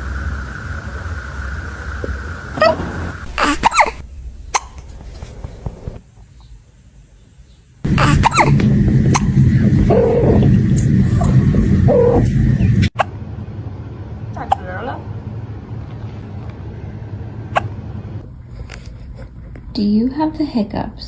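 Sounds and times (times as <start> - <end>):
low rumble: 7.8 - 18.5.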